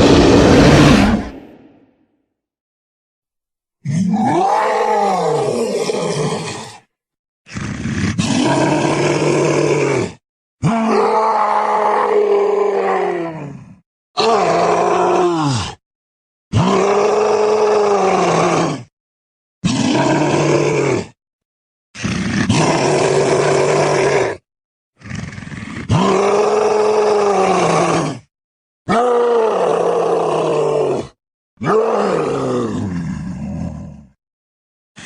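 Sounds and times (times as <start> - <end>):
deep creature cries: 0.0 - 1.8, 3.8 - 6.9, 7.5 - 15.8, 16.5 - 18.9, 19.6 - 21.2, 22.0 - 24.4, 25.0 - 28.3, 28.9 - 34.0.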